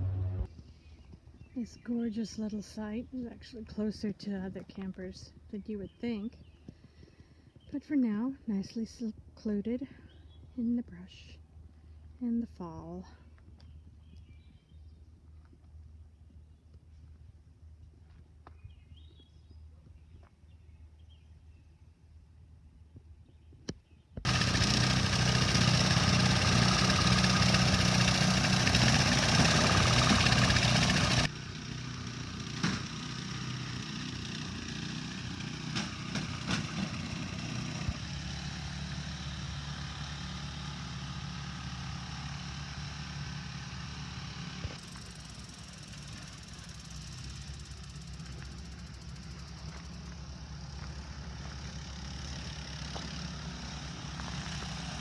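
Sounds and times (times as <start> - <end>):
engine droning: 0.0 - 8.9, 24.2 - 55.0.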